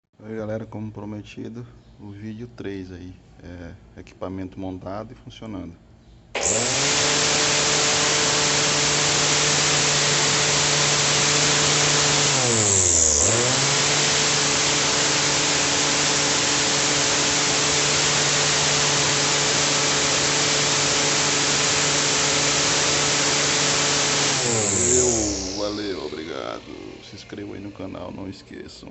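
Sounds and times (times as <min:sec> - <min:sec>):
electric lawn mower running: 0:06.4 - 0:28.2.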